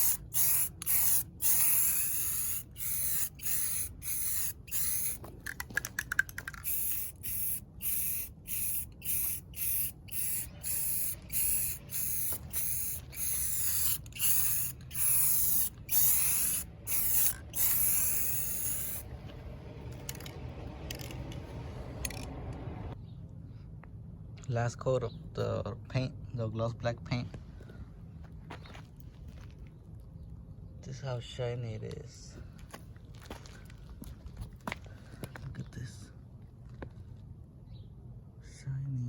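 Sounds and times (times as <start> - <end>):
spray paint can hissing: 0.0 - 19.1.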